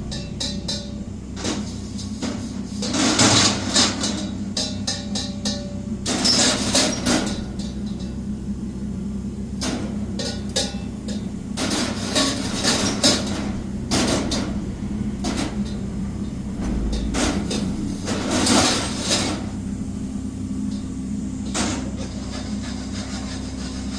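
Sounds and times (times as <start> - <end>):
low steady hum: 0.0 - 23.8.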